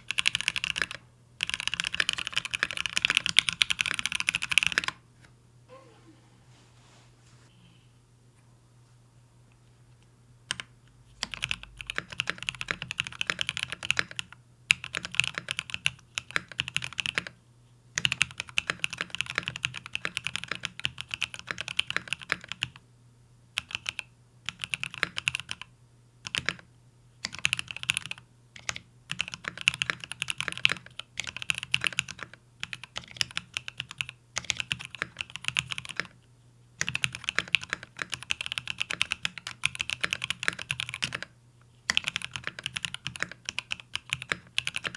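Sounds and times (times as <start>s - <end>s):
mechanical keyboard typing: 0.0s - 5.0s, 10.5s - 17.3s, 18.0s - 22.7s, 23.6s - 25.6s, 26.2s - 26.6s, 27.2s - 36.2s, 36.8s - 41.3s, 41.9s - 44.9s.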